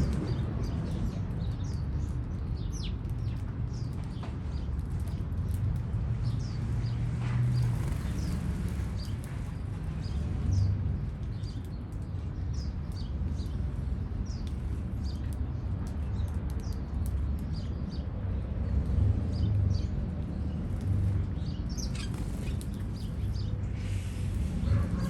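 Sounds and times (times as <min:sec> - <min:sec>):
low city rumble: 0:00.0 - 0:25.0
birds chirping: 0:07.6 - 0:09.3, 0:19.4 - 0:25.0.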